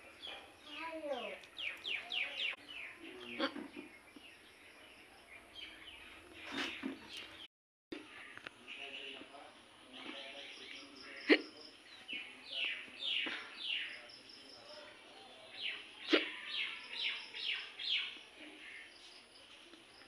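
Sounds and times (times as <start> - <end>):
sharp loud hiccup: 16.1 - 16.4.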